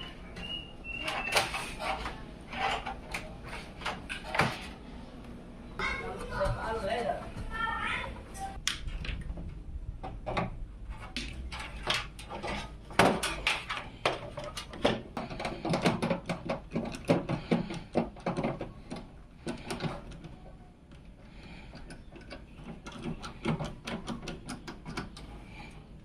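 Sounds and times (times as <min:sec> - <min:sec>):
computer hardware clicks and knocks: 0:10.0 - 0:25.3.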